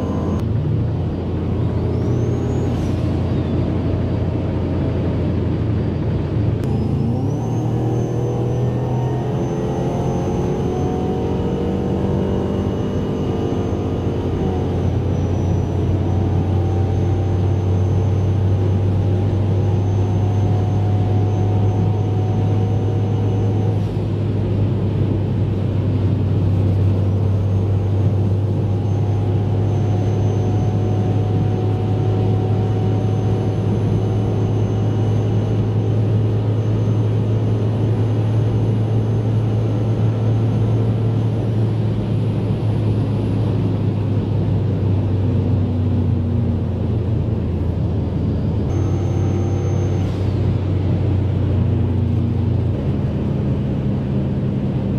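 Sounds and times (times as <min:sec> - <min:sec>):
car engine drone: 0:00.0 - 0:54.9
road and wind noise: 0:00.0 - 0:54.9
faint high whine: 0:48.7 - 0:51.0.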